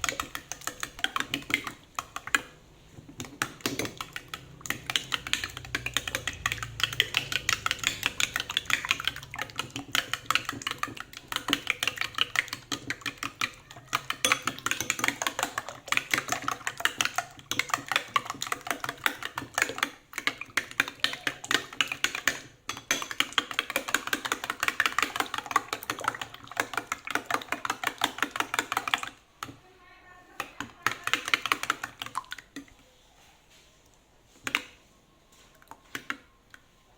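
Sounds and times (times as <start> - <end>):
utensil clicking against bowl: 3.2 - 29.5.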